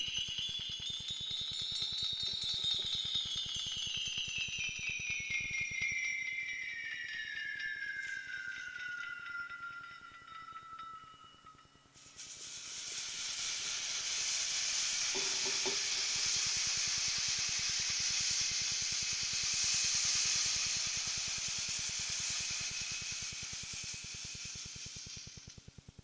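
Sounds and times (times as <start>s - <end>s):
long steady hissing: 6.9s - 26.0s.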